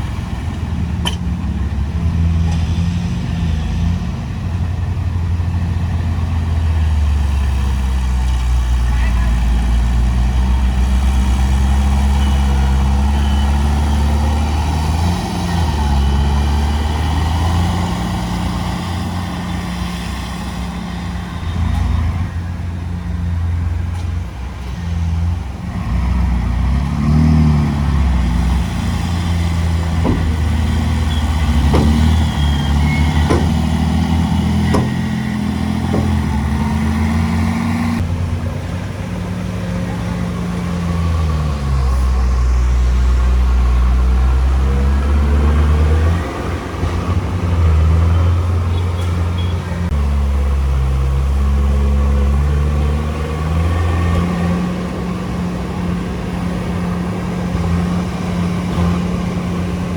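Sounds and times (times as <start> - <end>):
diesel engine running under load: 0.0 - 59.9
sharp knocks: 29.4 - 37.5.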